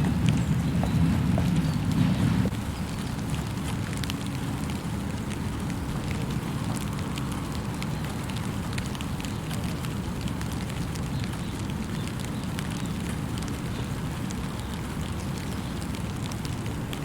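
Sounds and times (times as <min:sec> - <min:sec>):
low rumble: 0:00.0 - 0:03.4
steady rain falling: 0:00.0 - 0:17.0
drip ticks: 0:02.8 - 0:17.0.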